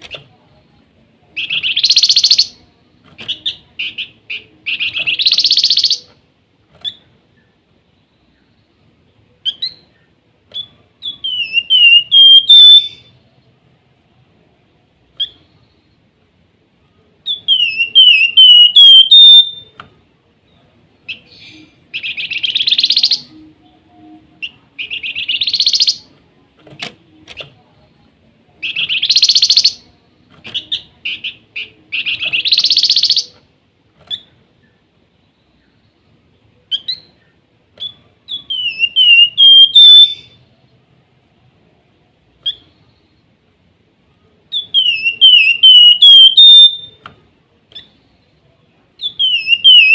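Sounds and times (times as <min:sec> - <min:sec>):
bird whistling song: 0:00.0 - 0:02.6, 0:03.2 - 0:06.2, 0:09.4 - 0:13.2, 0:15.2 - 0:15.8, 0:17.2 - 0:19.8, 0:20.5 - 0:27.7, 0:28.6 - 0:33.4, 0:36.7 - 0:40.5, 0:42.4 - 0:43.1, 0:44.5 - 0:47.1, 0:49.0 - 0:49.9.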